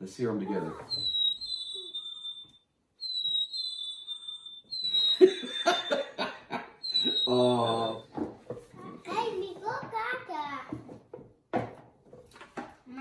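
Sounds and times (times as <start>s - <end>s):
toy bird whistle song: 0.7s - 6.0s, 6.8s - 8.2s
laughter: 5.2s - 6.9s
children's voices: 8.7s - 10.9s.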